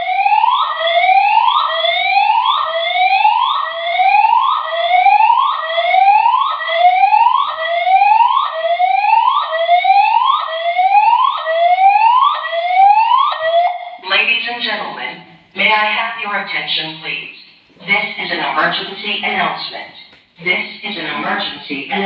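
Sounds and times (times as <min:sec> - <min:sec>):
fire alarm whoop tone: 0:00.0 - 0:14.0.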